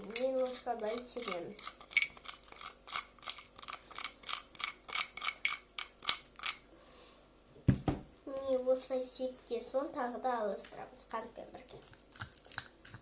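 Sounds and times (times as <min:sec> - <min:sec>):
thump: 0:07.6 - 0:08.1.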